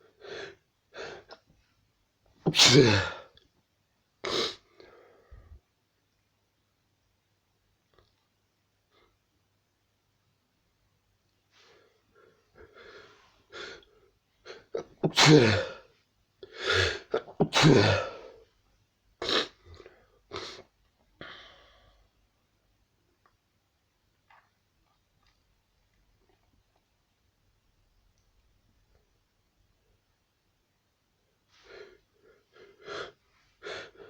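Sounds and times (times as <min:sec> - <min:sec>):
person sneezing: 0:02.4 - 0:03.3, 0:14.5 - 0:15.9, 0:16.6 - 0:18.4
person sniffing: 0:02.5 - 0:03.2, 0:16.5 - 0:18.3.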